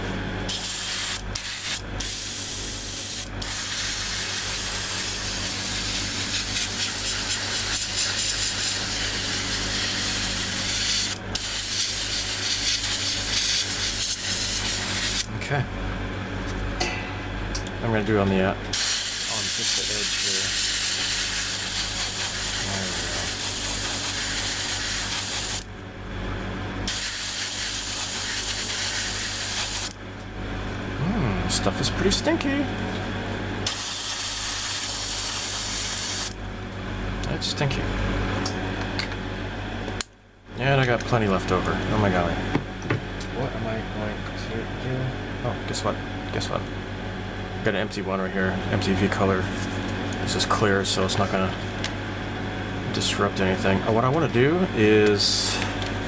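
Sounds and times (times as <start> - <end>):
steady low hum: 0.0 - 56.0
airbrush spraying hiss: 0.5 - 15.2, 18.8 - 25.6, 26.9 - 29.9, 33.7 - 36.4.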